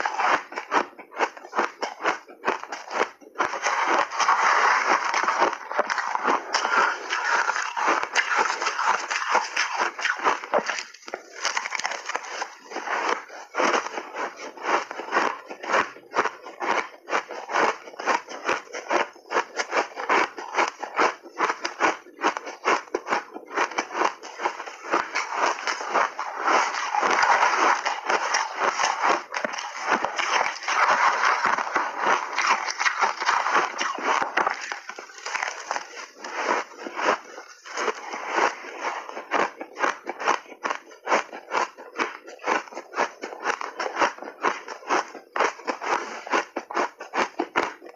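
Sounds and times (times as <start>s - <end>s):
crunching shaved ice: 0.0s - 47.9s.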